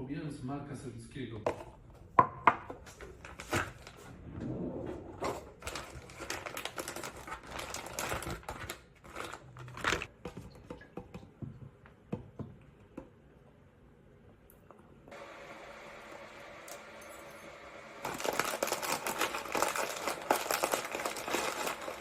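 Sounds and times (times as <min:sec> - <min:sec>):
objects being handled: 0:18.0 - 0:22.0.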